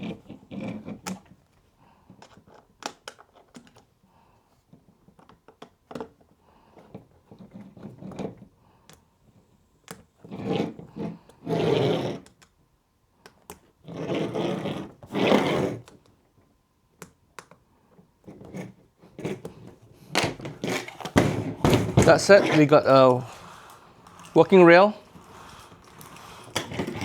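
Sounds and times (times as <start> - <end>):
rubbing scrapes: 19.2 - 27.0.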